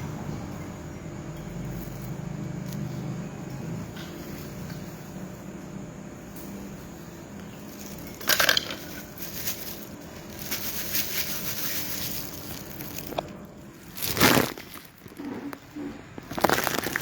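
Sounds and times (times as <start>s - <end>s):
steady low hum: 0.0s - 17.0s
crinkling and rustling: 7.6s - 17.0s.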